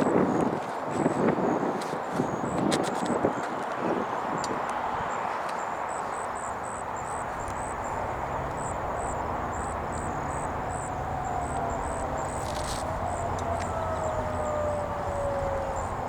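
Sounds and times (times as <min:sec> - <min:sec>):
distant tornado sirens: 0:00.0 - 0:16.0
high chirping pulse: 0:06.4 - 0:16.0
low hum: 0:06.5 - 0:16.0.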